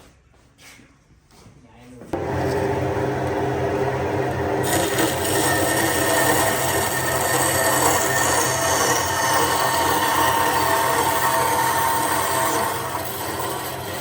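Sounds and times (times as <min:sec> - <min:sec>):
power tool working wood: 0:02.2 - 0:14.0.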